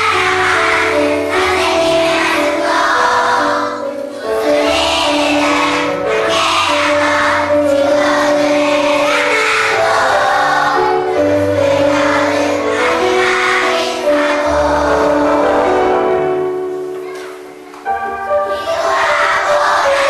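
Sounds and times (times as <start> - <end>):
children singing together: 0.0 - 20.0
instrumental accompaniment: 0.0 - 20.0.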